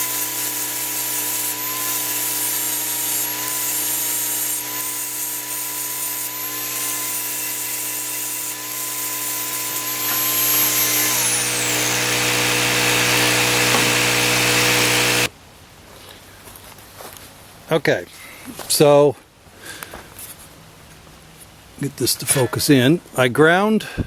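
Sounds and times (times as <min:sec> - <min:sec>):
angle grinder grinding metal: 0:00.0 - 0:15.3.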